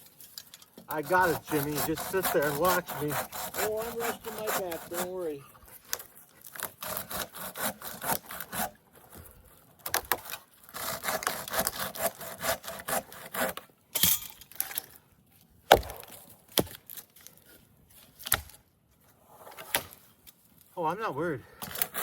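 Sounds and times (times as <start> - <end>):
rasping sawing strokes: 0.9 - 8.8, 10.1 - 13.7, 21.6 - 22.0.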